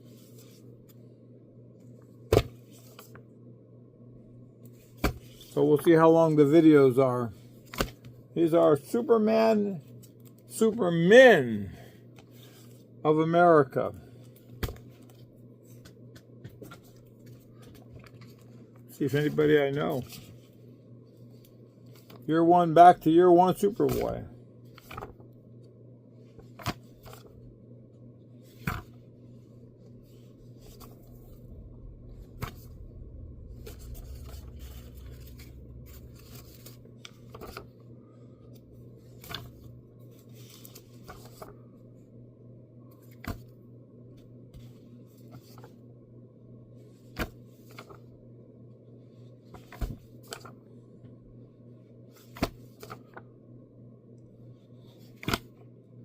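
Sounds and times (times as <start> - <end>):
paper rustling: 23.5 - 25.3, 28.4 - 31.4, 33.6 - 37.8, 39.0 - 41.6, 47.1 - 48.1, 52.2 - 53.2
low hum: 24.0 - 43.0.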